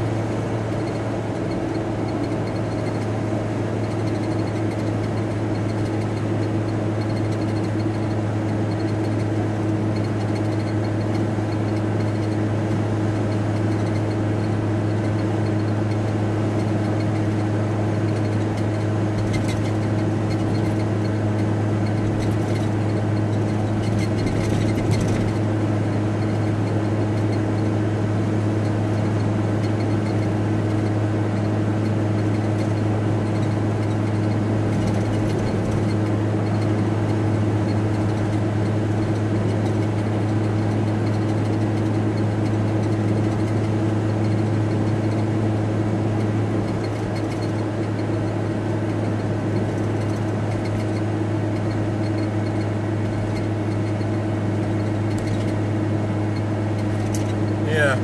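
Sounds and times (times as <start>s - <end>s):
van interior engine drone: 0.0s - 58.0s.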